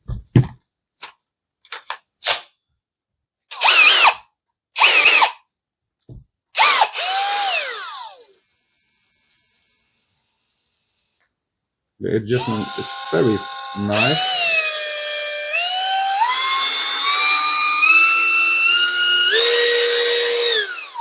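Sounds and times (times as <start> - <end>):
cordless drill motor running: 3.5 - 4.2, 4.8 - 5.4, 6.6 - 10.7, 12.4 - 21.0.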